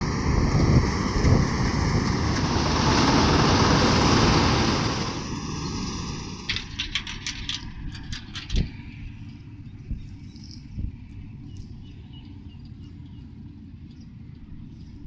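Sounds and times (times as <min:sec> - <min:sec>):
combine harvester running: 0:00.0 - 0:09.4.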